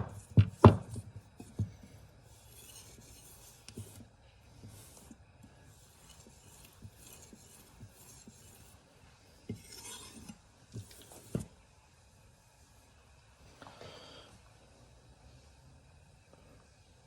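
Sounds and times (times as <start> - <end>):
knife rubbing on strop: 0.0 - 8.8, 9.5 - 11.5.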